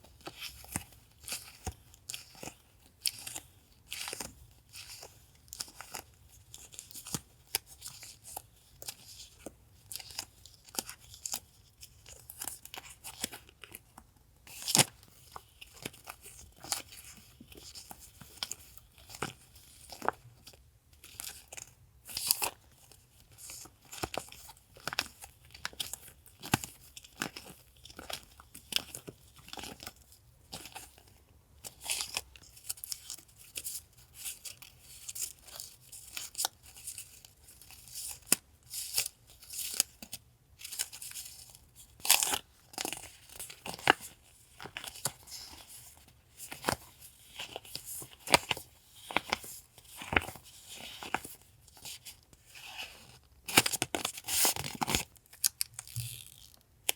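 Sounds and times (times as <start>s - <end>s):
packaging rustling and crinkling: 41.0s - 56.9s.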